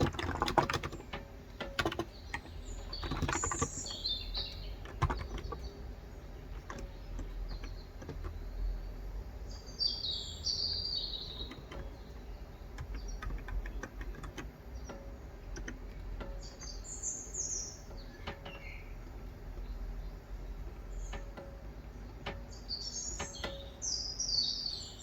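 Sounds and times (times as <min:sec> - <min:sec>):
keyboard keystrokes: 0:00.0 - 0:05.7, 0:11.3 - 0:16.7
birds chirping: 0:00.0 - 0:25.0.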